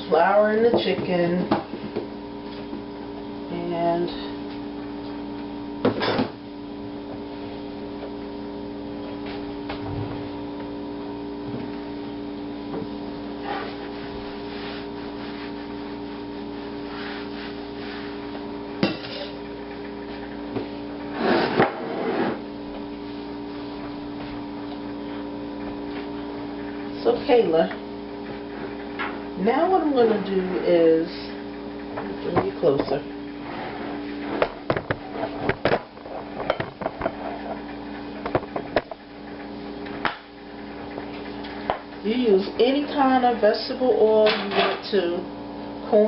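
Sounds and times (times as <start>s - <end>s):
steady appliance hum: 0.0s - 46.0s
kitchenware clattering: 18.8s - 19.4s.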